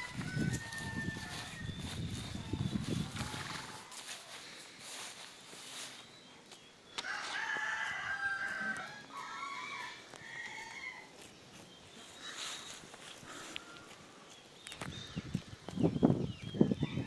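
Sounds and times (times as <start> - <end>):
rooster crowing: 0.0 - 4.0, 7.0 - 11.1.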